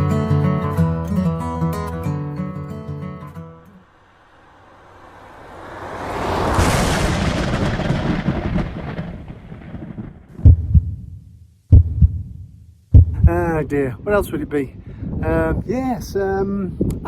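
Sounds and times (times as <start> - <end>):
thunder-like rumbling: 4.2 - 11.2
low thumps: 4.8 - 13.8.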